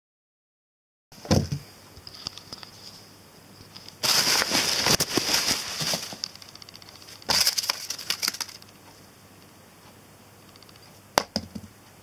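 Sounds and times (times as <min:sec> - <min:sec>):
packaging crinkling and rustling: 0:03.8 - 0:08.7.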